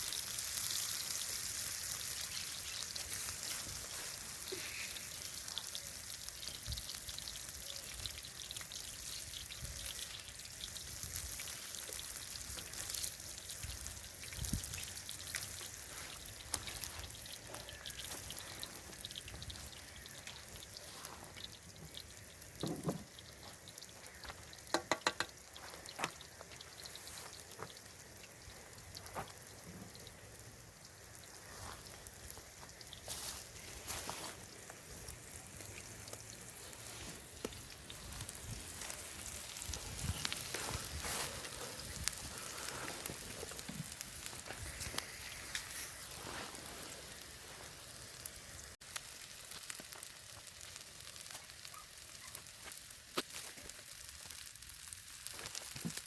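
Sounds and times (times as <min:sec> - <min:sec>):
onion sizzling in hot oil: 0:00.0 - 0:56.0
knocks: 0:24.7 - 0:25.3.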